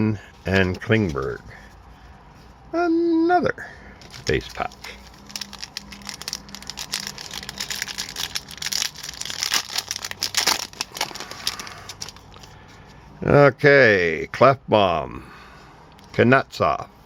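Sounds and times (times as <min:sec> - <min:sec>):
cards being handled: 0:00.4 - 0:01.9, 0:04.0 - 0:13.0
wrapper tearing and crinkling: 0:04.0 - 0:12.5.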